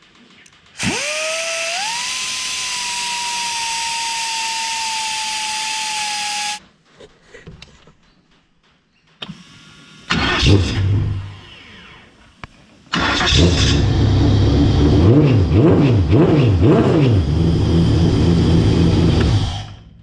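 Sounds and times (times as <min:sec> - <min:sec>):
loud engine burst: 0:10.1 - 0:12.1, 0:12.9 - 0:19.9
racing engine revving: 0:13.0 - 0:19.8.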